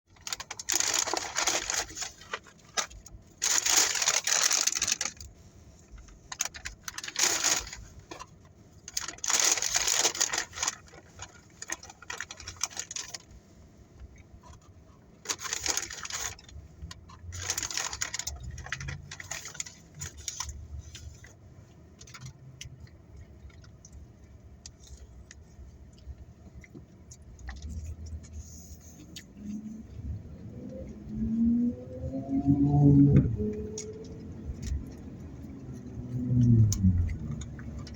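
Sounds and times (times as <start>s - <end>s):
rustling and handling noise: 0.1s - 30.2s.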